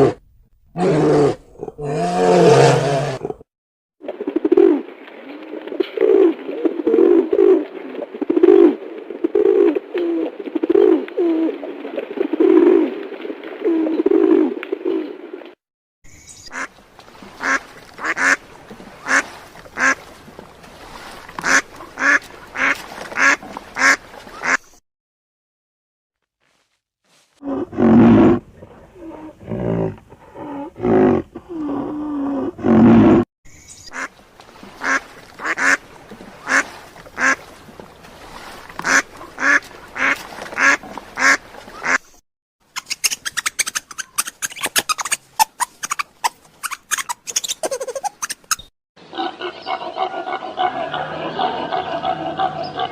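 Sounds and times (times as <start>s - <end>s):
duck quacking: 17.4s - 18.4s, 19.0s - 19.2s, 19.8s - 20.0s, 21.4s - 24.6s, 34.8s - 35.8s, 36.4s - 36.6s, 37.2s - 37.4s, 38.8s - 42.0s.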